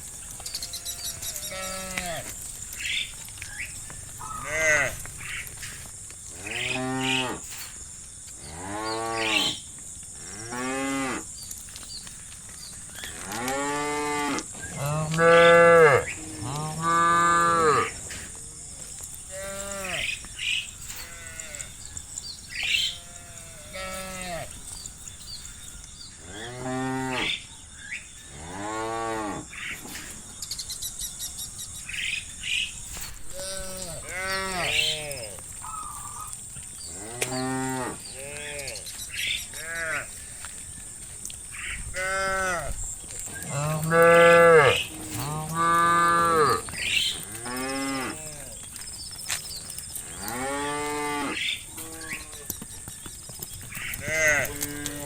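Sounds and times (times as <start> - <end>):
cattle mooing: 4.2 - 5.8, 6.4 - 7.5, 13.2 - 18.3.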